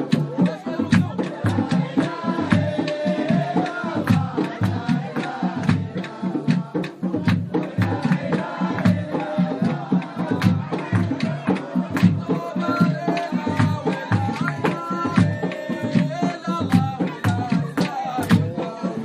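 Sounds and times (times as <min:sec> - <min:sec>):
drum beats: 0:00.0 - 0:19.0
voices singing a melody: 0:00.0 - 0:19.0.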